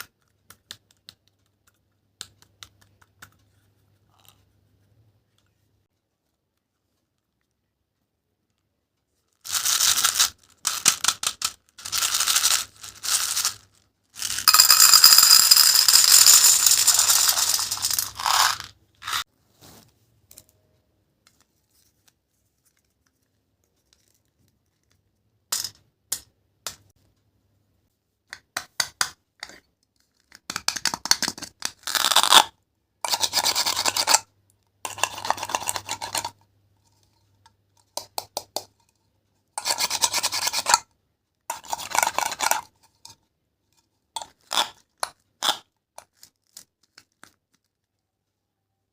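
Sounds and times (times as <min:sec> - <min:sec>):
toy fruit scraping and tearing: 0:31.1 - 0:32.5.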